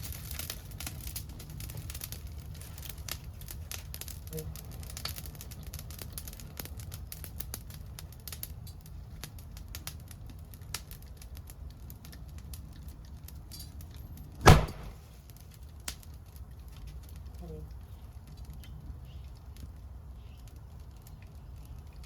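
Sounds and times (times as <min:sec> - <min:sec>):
bonfire crackling: 0:00.0 - 0:22.0
bamboo bursting bang: 0:14.4 - 0:15.1.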